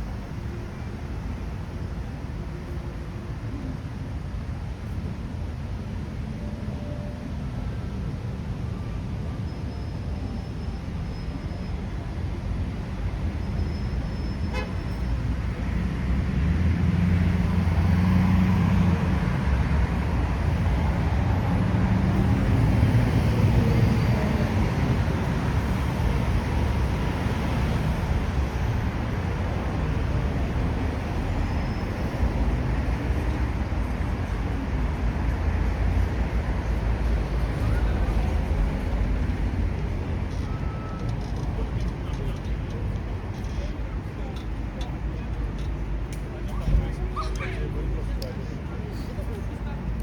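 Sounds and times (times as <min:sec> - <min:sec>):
road traffic rumbling: 0:00.0 - 0:50.0.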